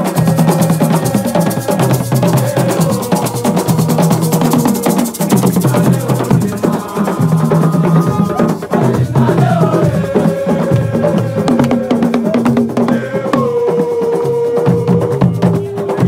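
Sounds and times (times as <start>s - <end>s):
low booming drum: 0.0s - 14.0s
drum ensemble playing: 0.0s - 16.0s.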